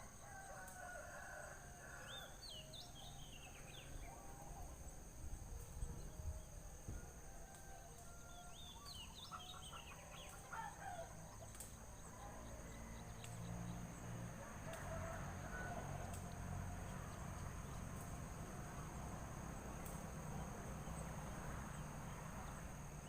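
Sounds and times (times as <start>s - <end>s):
birds chirping: 8.4s - 14.0s.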